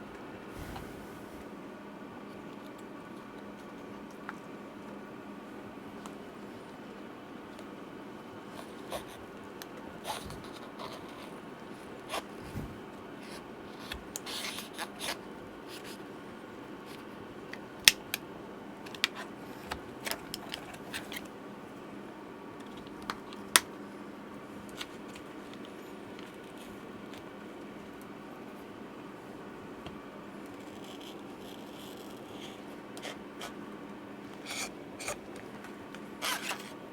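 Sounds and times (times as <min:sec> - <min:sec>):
steady low hum: 0:00.0 - 0:02.3, 0:11.4 - 0:13.6.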